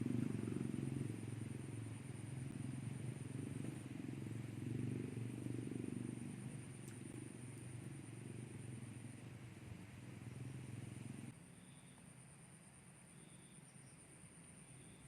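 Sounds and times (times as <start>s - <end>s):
low pulsing engine rumble: 0.0s - 11.4s.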